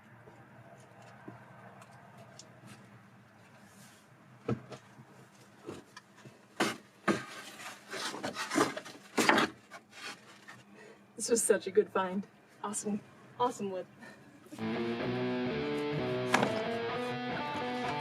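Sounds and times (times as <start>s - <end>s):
wooden boards knocking and scraping: 6.6s - 9.8s.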